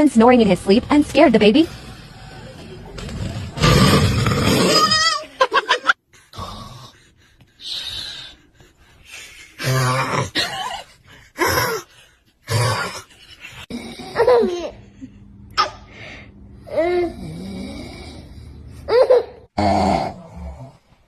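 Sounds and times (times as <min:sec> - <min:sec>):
man snoring loudly: 0:01.6 - 0:04.9, 0:13.7 - 0:14.3, 0:16.8 - 0:18.6
breathy vocal sounds: 0:01.6 - 0:05.0, 0:06.2 - 0:14.4, 0:15.9 - 0:18.9, 0:19.6 - 0:21.0.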